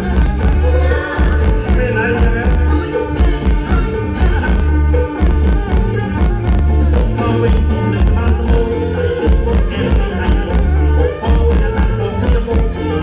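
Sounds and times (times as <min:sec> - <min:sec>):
heavy pulsing bass beat: 0:00.0 - 0:13.0
loud electric folk music: 0:00.0 - 0:13.0.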